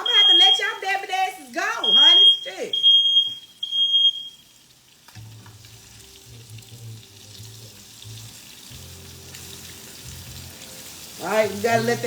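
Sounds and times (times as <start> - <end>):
fish sizzling in hot oil: 3.4 - 12.0.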